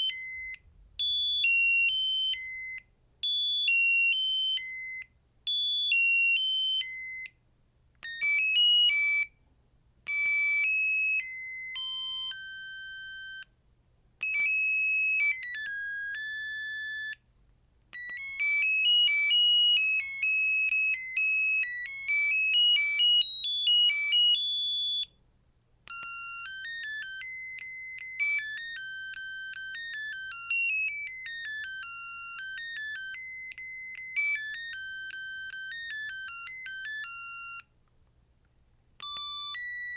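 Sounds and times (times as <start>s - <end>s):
beeping phone ringtones: 0.0s - 7.3s, 8.0s - 9.3s, 10.1s - 13.5s, 14.2s - 17.2s, 18.0s - 25.1s, 25.9s - 37.6s, 39.0s - 39.9s.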